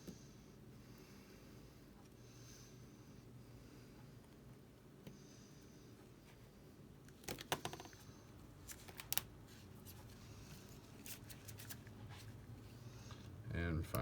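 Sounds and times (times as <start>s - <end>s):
small clicks and rustles: 7.0s - 12.4s.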